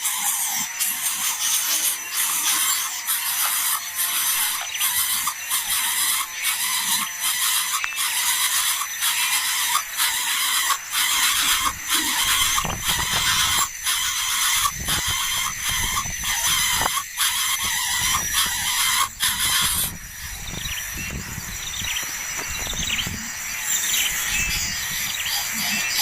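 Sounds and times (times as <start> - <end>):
nestlings raspy begging calls: 0.0 - 26.0.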